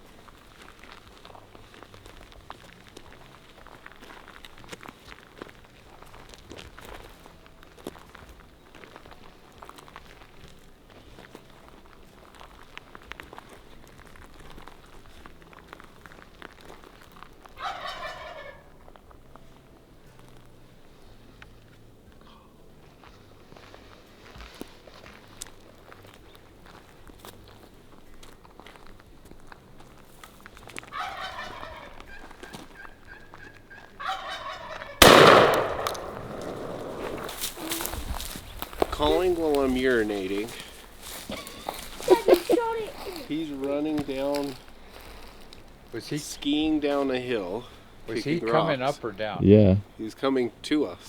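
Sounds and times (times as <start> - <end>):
faint ticks and rustles: 0.0 - 34.0, 35.0 - 51.0
turkey gobbling: 17.6 - 18.7, 30.9 - 36.1
gunshot: 35.0 - 37.9.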